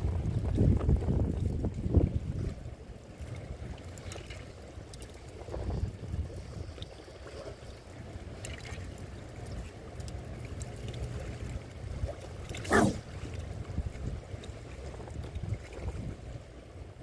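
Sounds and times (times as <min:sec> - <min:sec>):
wind buffeting microphone: 0:00.0 - 0:02.6.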